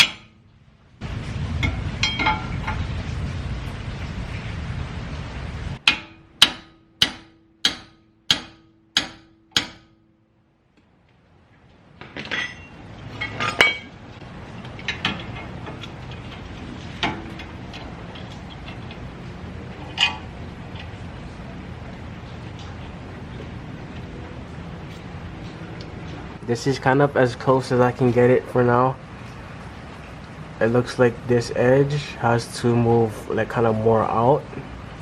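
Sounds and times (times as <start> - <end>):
hammer striking steel: 0.0 - 0.4, 1.6 - 2.8, 5.8 - 10.2
steady background noise: 0.0 - 35.0
light metal knocks and clinks: 12.0 - 14.0.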